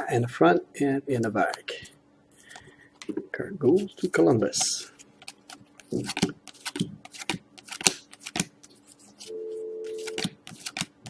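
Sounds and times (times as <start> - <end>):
trading cards snapping: 5.2 - 11.0.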